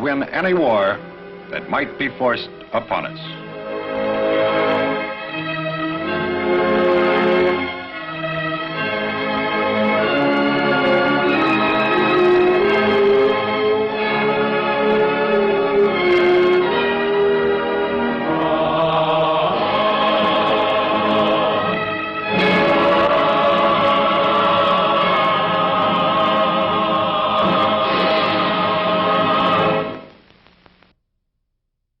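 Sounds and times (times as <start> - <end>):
orchestral music: 0.0 - 30.0
choir singing sustained chords: 3.4 - 30.0.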